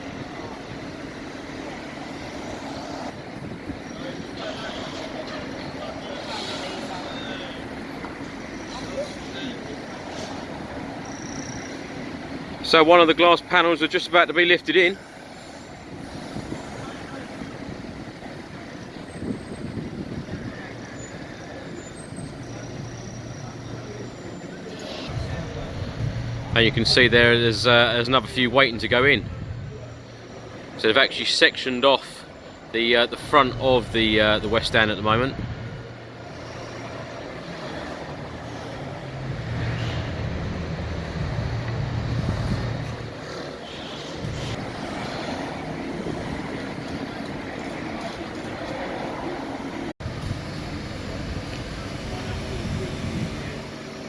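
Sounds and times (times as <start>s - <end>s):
street traffic: 0.0s - 54.0s
vehicle engine low drone: 15.0s - 30.9s, 32.3s - 54.0s.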